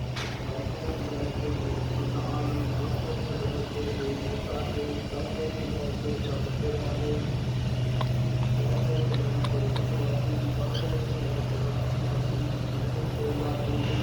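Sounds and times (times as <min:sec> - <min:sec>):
low machine hum: 0:00.0 - 0:14.0.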